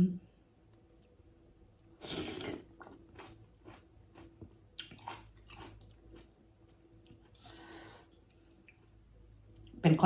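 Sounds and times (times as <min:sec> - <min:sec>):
person chewing fish: 0:02.0 - 0:06.4.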